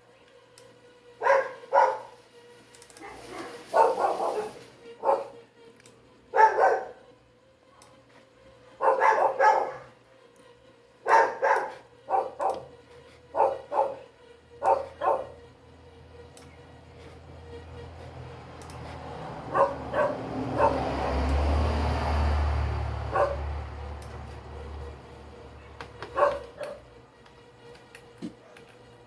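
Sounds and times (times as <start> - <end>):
dog barking: 1.2 - 2.1, 3.0 - 5.4, 6.3 - 7.0, 8.8 - 9.9, 11.0 - 12.7, 13.3 - 14.0, 14.6 - 15.4, 19.5 - 21.3, 23.1 - 23.5, 26.0 - 26.8.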